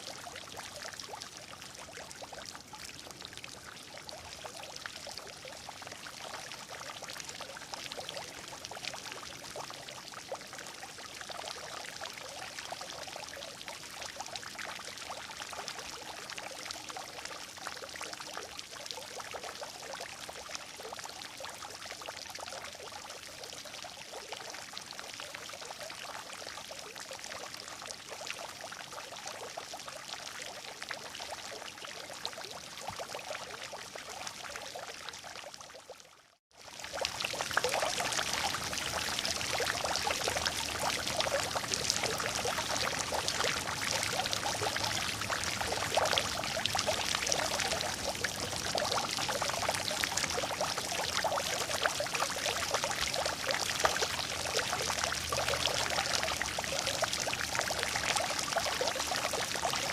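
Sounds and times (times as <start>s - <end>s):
water running and gurgling: 36.5s - 59.9s.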